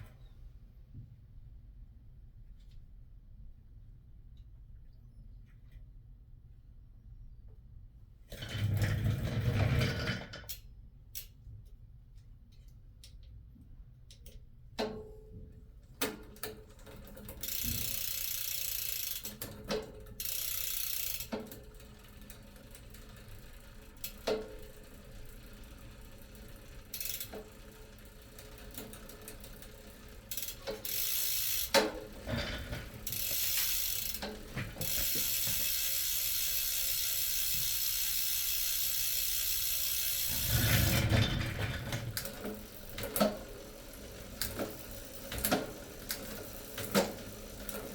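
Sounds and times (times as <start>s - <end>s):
rapid ratcheting clicks: 16.0s - 47.9s.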